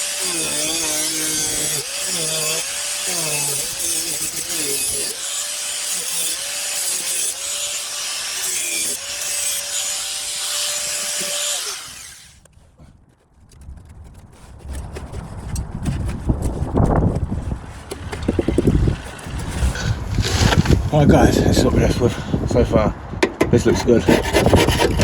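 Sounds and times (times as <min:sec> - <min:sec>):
angle grinder cutting steel: 0:00.0 - 0:12.4.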